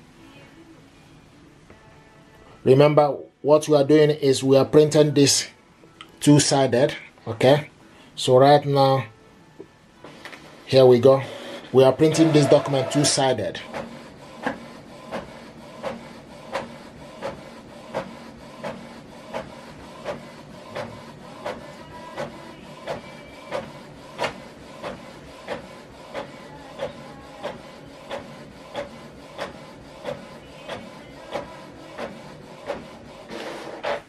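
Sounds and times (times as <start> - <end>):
printer carriage moving: 10.0 - 34.0
printer motor hum: 10.0 - 34.0
printer clicking: 11.1 - 34.0.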